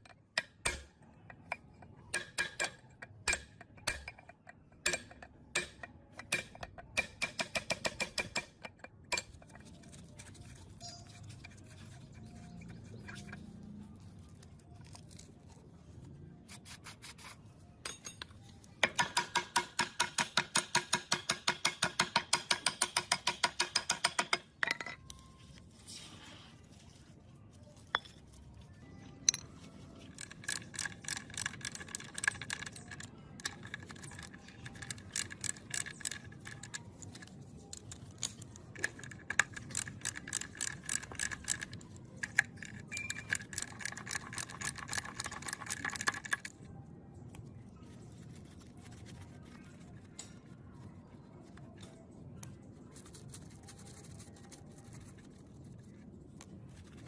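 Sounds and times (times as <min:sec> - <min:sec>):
rapid metallic clicking: 0:30.1 - 0:46.5.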